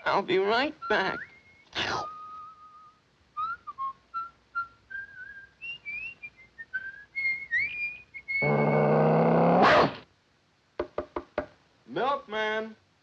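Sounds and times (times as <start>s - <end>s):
person whistling a tune: 0.9s - 8.8s.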